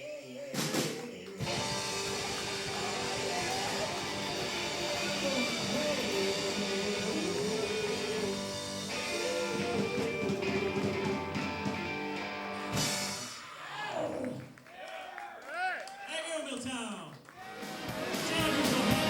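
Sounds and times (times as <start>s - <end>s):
blues band with guitar and drums: 0.6s - 13.5s, 17.4s - 19.0s.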